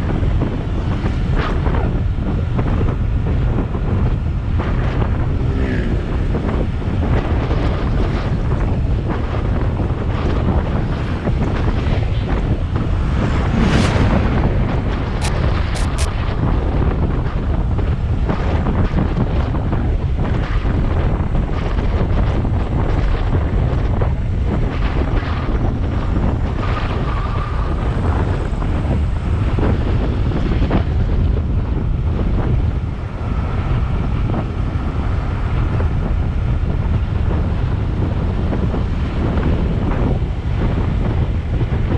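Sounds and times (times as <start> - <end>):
wind rushing over microphone: 0.0 - 41.9
low rumble: 8.7 - 17.6.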